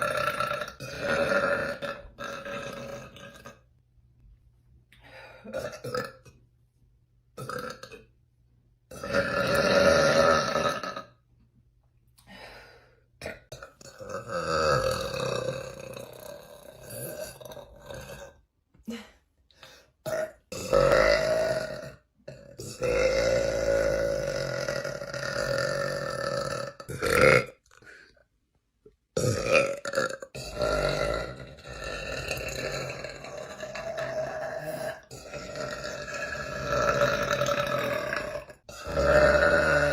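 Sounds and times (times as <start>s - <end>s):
woman belching: 0.0s - 3.6s, 5.5s - 6.4s, 7.4s - 8.1s, 8.9s - 11.2s, 13.2s - 18.4s, 20.0s - 27.6s, 29.2s - 39.9s.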